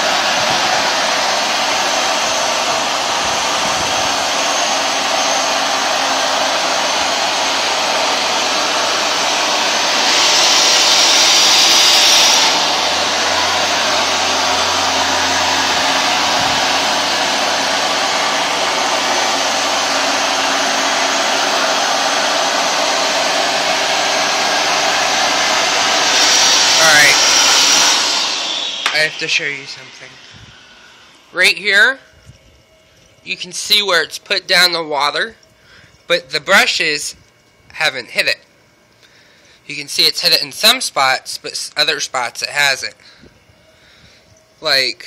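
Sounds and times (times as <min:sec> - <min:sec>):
carpet washer motor whirring: 0:00.0 - 0:31.4.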